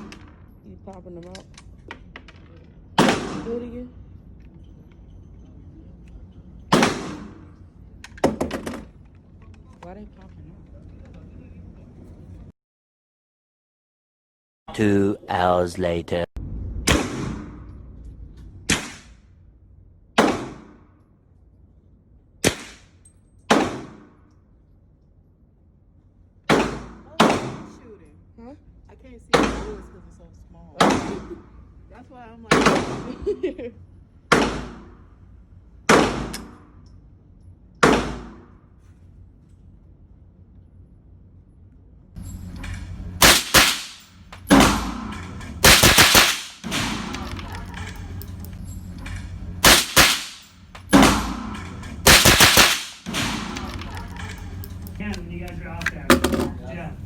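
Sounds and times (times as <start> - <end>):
gunshots with echo: 43.2 - 47.7, 49.6 - 54.1.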